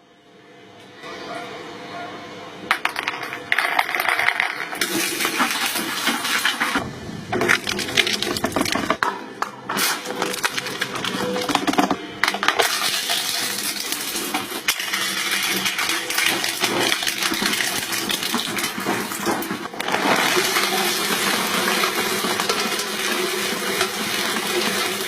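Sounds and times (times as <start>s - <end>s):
hydraulic machine hum: 4.7s - 21.0s.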